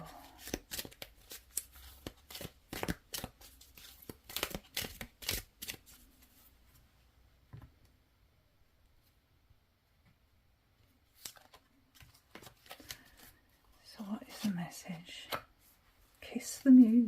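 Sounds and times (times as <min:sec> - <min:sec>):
cards being shuffled: 0:00.3 - 0:06.0, 0:11.1 - 0:13.4, 0:14.3 - 0:14.5.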